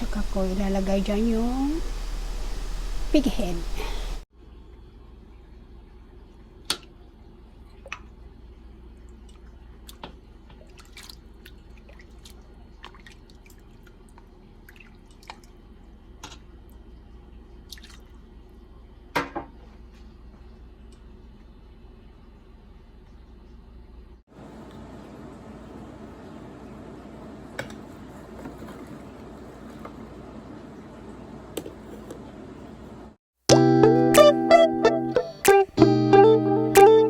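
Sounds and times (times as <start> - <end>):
steady low hum: 0.0 - 10.6
liquid dripping: 17.6 - 18.2.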